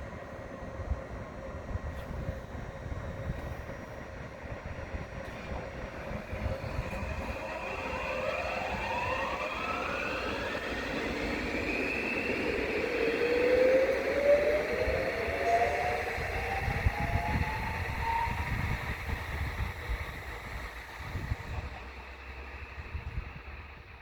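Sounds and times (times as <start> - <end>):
train rumble: 0.0 - 24.0
lower whine climbing: 4.9 - 24.0
traction motor whine rising: 5.5 - 23.9.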